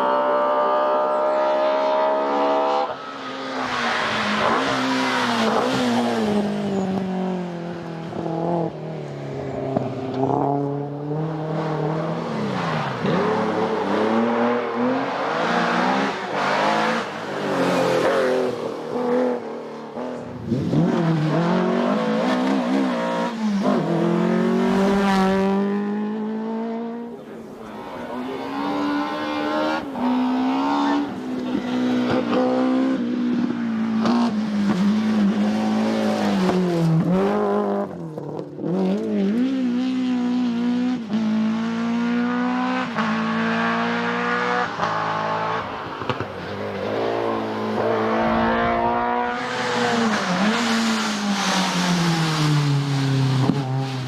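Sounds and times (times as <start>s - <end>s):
rally cars at full throttle: 0.0s - 54.0s.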